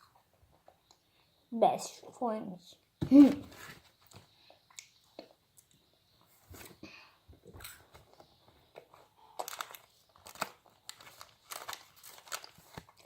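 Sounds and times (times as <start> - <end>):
foil wrapper crinkling: 9.4 - 13.0.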